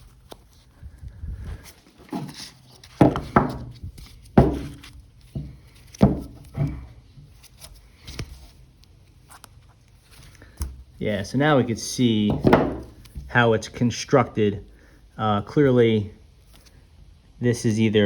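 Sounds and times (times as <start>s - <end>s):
handling thuds: 1.4s - 8.4s, 10.0s - 13.4s.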